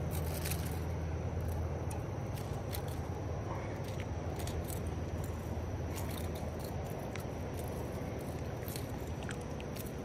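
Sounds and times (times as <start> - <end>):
small clicks and ticks: 3.8 - 10.0.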